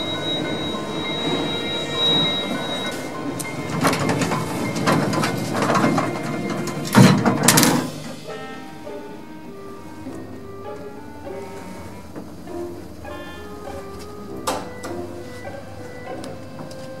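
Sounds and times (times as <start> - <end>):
lift door sliding clatter: 0.0 - 8.4
lift humming: 0.0 - 17.0
lift clicks and clattering: 2.9 - 8.2.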